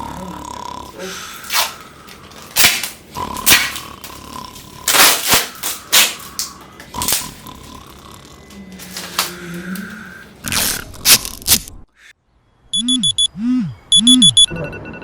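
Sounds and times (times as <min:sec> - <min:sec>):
man snoring: 0:00.0 - 0:02.2, 0:03.1 - 0:10.4.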